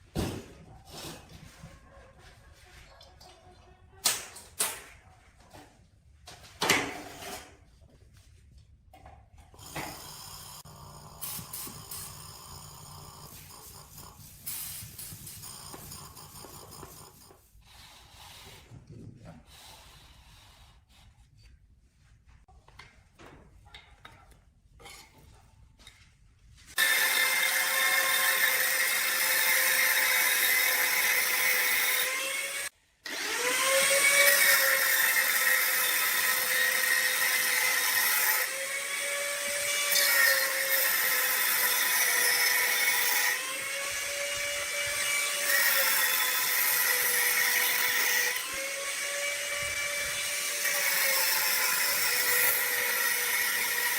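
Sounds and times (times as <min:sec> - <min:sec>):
electric power tool running: 0:26.8 - 0:53.9.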